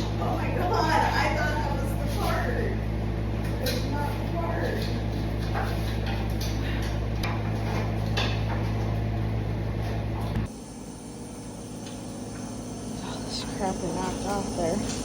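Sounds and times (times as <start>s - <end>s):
machine humming: 10.4s - 15.0s.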